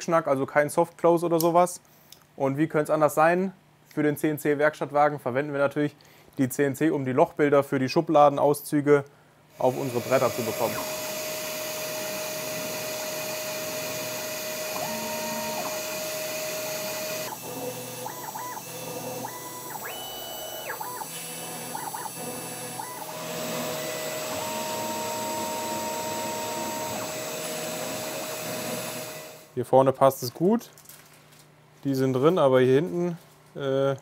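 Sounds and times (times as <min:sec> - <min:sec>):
stepper motors tones: 0:09.6 - 0:29.4
router spindle whine: 0:09.6 - 0:29.5.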